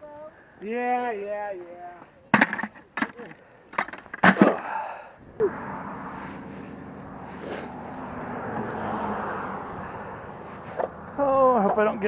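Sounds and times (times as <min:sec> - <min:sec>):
vehicle passing by: 0:05.4 - 0:12.0.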